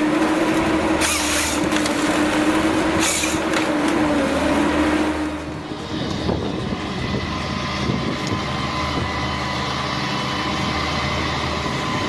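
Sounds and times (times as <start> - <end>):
heavy machine engine running: 0.0 - 12.0
steady whine: 0.0 - 12.0.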